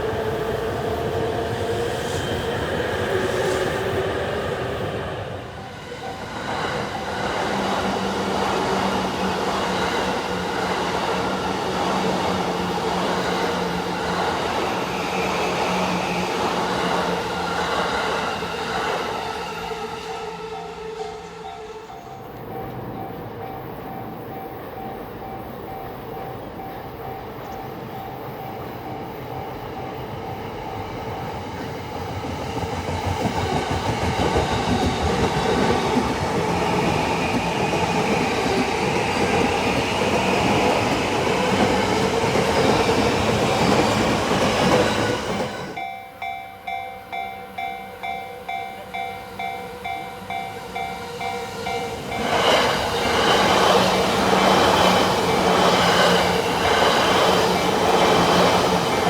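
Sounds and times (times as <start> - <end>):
electric train rumble: 0.0 - 59.0
level crossing warning bell: 19.3 - 31.2, 45.4 - 55.1.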